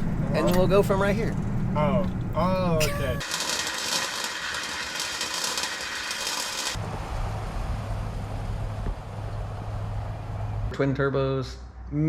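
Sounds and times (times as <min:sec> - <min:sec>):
harsh rushing hiss: 0:03.2 - 0:06.8
truck engine running: 0:04.3 - 0:10.7.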